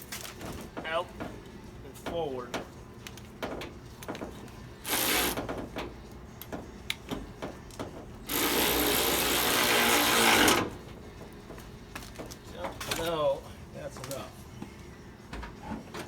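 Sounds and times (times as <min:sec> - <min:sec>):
power tool running: 0:04.8 - 0:05.4, 0:08.3 - 0:10.7.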